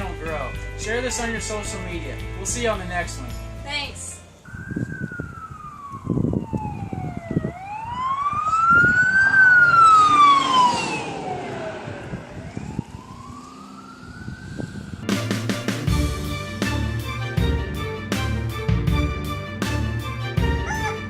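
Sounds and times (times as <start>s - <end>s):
wailing siren: 4.4s - 15.4s, 20.4s - 21.0s.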